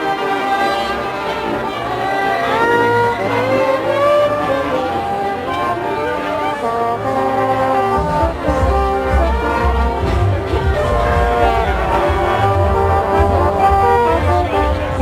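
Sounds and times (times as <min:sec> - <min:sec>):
marching band playing: 0:00.0 - 0:15.0.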